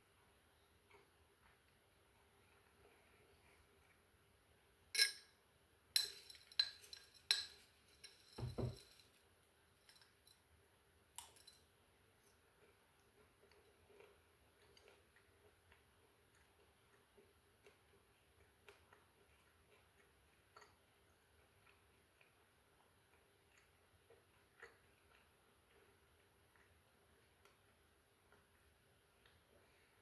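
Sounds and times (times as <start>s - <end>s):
spoon clinking against glass jar: 5.0s - 5.3s, 6.0s - 9.2s, 11.2s - 11.6s.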